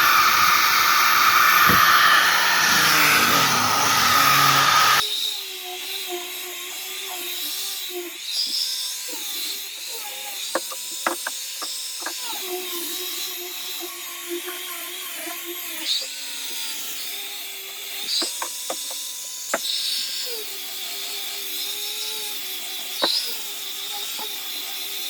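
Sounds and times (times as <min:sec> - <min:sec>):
small power tool motor running: 0:00.0 - 0:25.0
sharp knocks and clicks: 0:10.6 - 0:12.2, 0:18.2 - 0:19.7.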